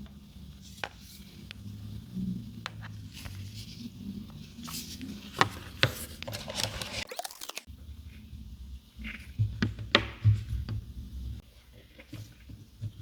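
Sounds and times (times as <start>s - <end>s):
packaging rustling and crinkling: 4.6s - 7.7s.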